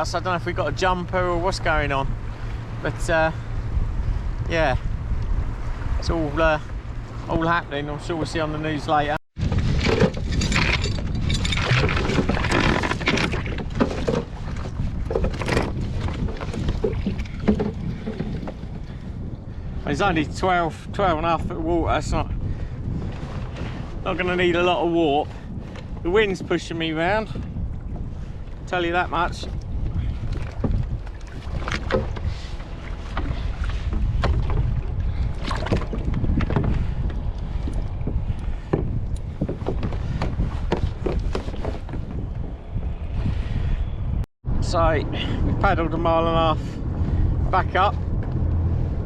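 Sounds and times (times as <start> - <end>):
water splashing around kayak: 0.0 - 43.9
wind buffeting microphone: 0.0 - 49.0
knocks against boat: 15.0 - 18.6, 38.0 - 42.1.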